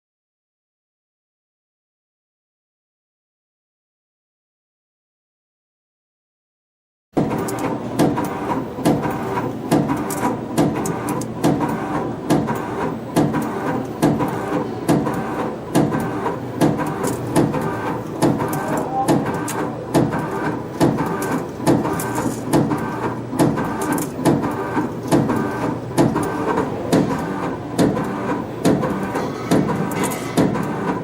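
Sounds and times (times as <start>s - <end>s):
wire feed whirring: 7.2s - 31.0s.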